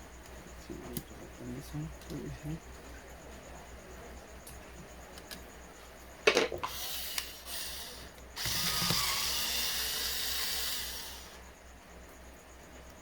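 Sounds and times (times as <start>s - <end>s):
screwdriver running: 6.6s - 11.4s.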